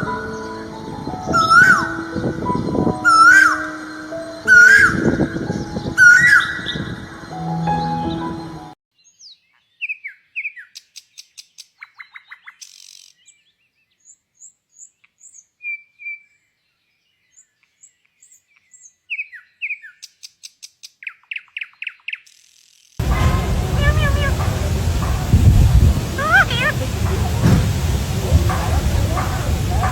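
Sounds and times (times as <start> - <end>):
songbird whistles and trill: 0.2 - 7.1.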